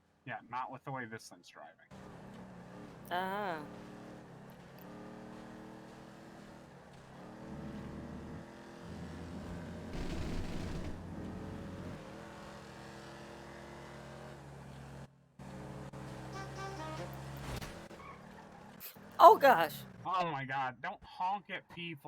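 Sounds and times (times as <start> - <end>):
car engine and road noise: 3.7 - 10.2, 11.0 - 16.3.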